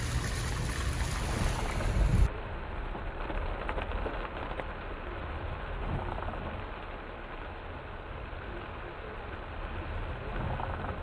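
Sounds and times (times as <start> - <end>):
heavy rain hissing: 0.0 - 2.3
road noise: 0.0 - 11.0.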